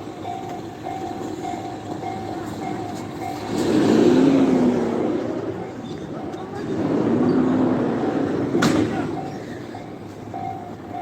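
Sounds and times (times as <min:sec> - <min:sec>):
railroad crossing alarm ringing: 0:00.0 - 0:06.6, 0:08.9 - 0:11.0
passing vehicle rumble: 0:03.0 - 0:09.6.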